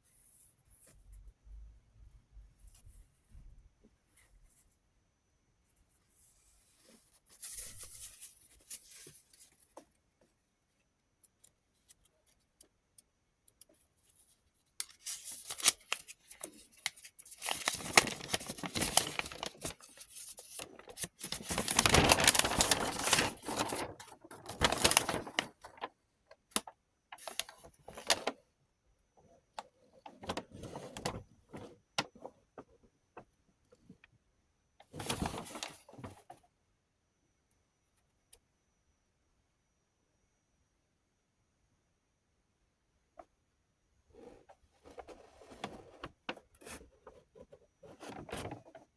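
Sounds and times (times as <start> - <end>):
plastic packaging rustling: 14.9 - 25.9, 26.6 - 28.4.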